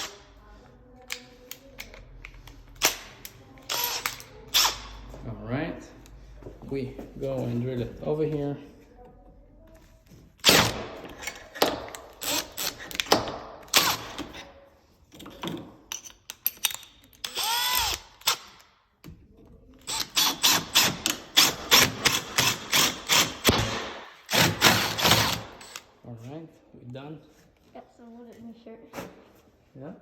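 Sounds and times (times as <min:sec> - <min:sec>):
power drill boring into wood: 0:03.7 - 0:04.8, 0:17.2 - 0:18.4, 0:19.9 - 0:23.6, 0:24.3 - 0:25.8.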